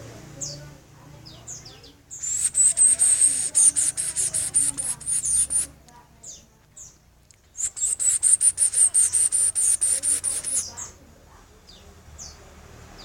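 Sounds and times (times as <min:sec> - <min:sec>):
bird calling high-pitched notes: 0:02.1 - 0:05.7, 0:07.6 - 0:10.8.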